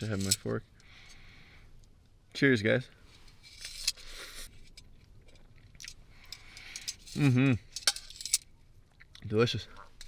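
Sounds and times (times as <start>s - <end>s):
chewing with small clicks: 8.9s - 9.9s.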